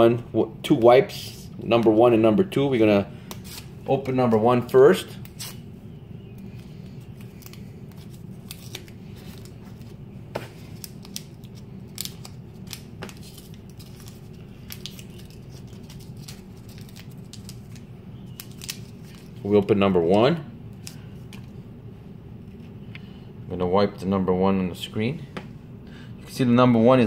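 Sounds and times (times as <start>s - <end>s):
steady low hum: 0.0s - 27.0s
wipe packet clicks and crinkles: 6.4s - 10.0s, 10.6s - 19.4s.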